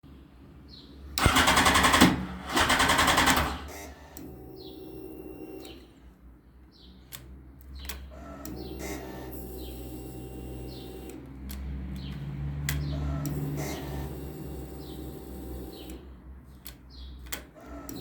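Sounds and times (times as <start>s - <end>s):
small birds chirping: 0.6s - 1.1s, 4.5s - 11.1s, 11.9s - 13.0s, 14.6s - 16.1s, 16.8s - 17.2s
sharp clicks: 1.2s - 4.3s.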